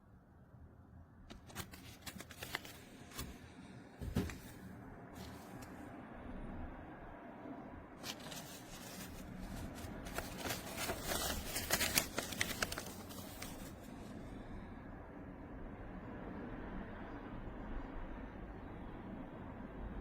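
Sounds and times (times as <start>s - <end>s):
low steady hum: 0.0s - 20.0s
rustling and clicking handling: 1.3s - 3.4s, 8.0s - 13.9s.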